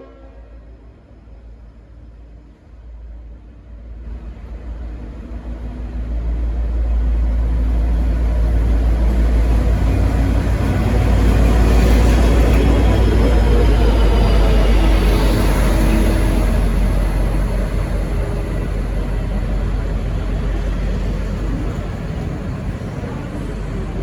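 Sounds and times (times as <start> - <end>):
locomotive engine rumble: 0.0 - 24.0.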